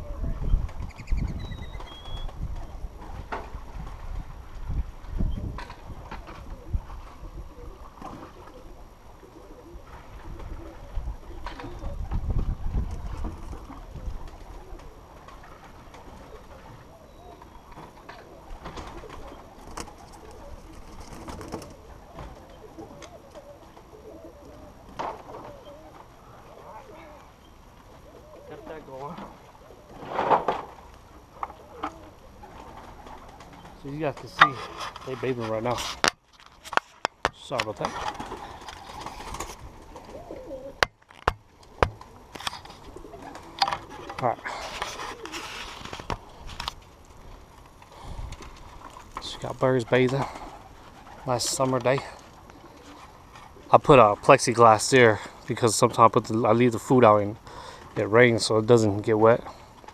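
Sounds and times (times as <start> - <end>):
pigeons cooing: 5.2 - 35.0, 37.8 - 40.9, 41.5 - 54.4.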